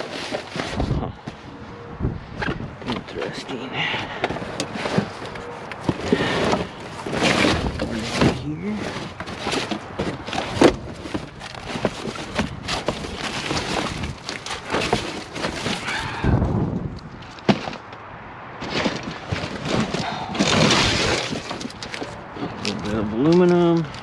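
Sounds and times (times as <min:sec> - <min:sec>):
rummaging through box of scrap: 0:00.0 - 0:01.5, 0:02.4 - 0:16.2, 0:17.2 - 0:17.9, 0:18.6 - 0:24.0.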